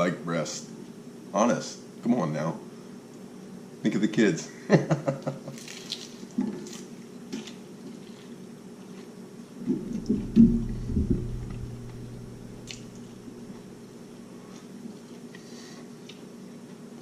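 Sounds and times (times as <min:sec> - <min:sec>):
person chewing fried chicken: 0:05.5 - 0:09.5.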